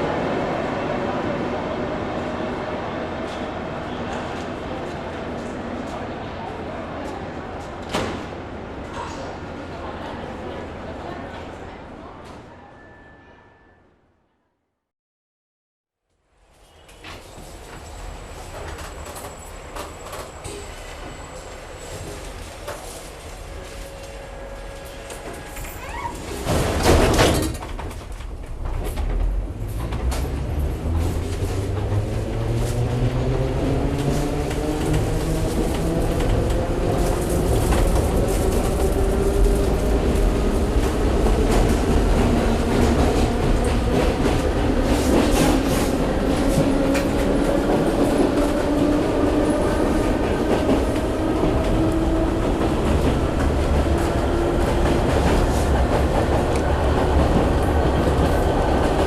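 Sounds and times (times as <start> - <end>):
train rumble: 16.6 - 59.0.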